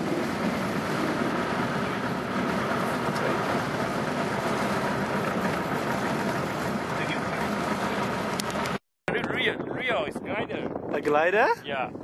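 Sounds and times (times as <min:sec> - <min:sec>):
light aircraft piston engine: 0:00.0 - 0:08.8.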